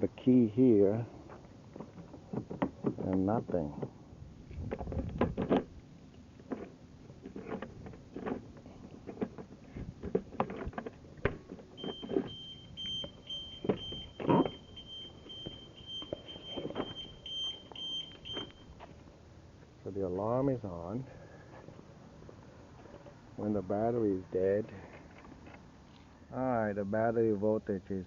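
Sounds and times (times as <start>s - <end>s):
car alarm beeping: 11.8s - 18.8s.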